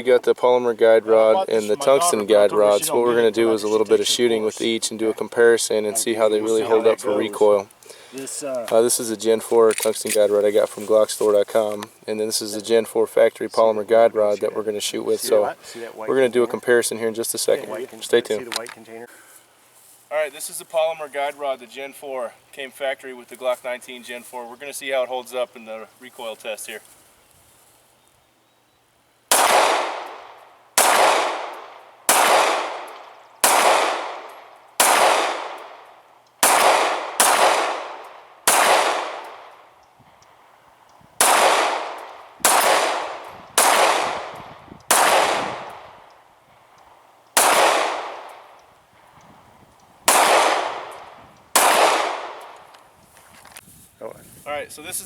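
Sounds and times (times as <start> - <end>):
pistol shots with ringing echo: 29.3 - 39.7, 41.2 - 46.0, 47.4 - 48.6, 50.1 - 52.6.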